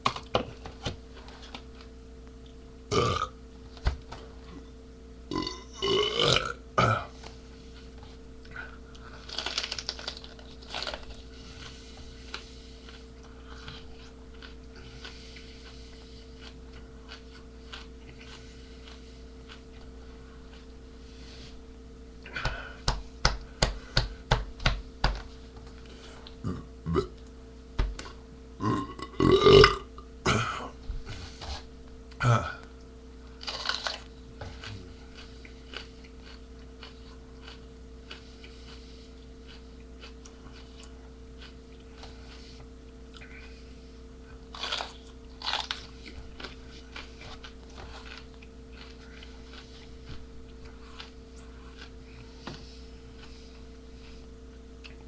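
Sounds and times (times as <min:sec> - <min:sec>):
man burping: 0:02.9 - 0:03.4, 0:05.3 - 0:07.1, 0:26.4 - 0:27.2, 0:28.6 - 0:30.8, 0:32.2 - 0:32.7.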